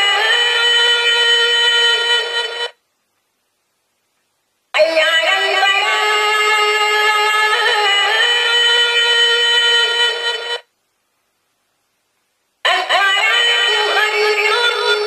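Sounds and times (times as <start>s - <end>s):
recorded sung call to prayer: 0.0s - 2.8s, 4.7s - 10.7s, 12.6s - 15.0s.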